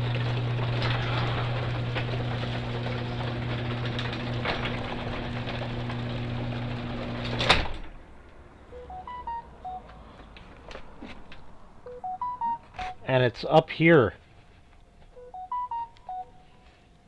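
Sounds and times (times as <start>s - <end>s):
garage door motor humming: 0.0s - 9.3s
garage door thud: 0.1s - 8.1s
short electronic beeps: 8.8s - 9.9s, 11.9s - 13.0s, 15.2s - 16.4s.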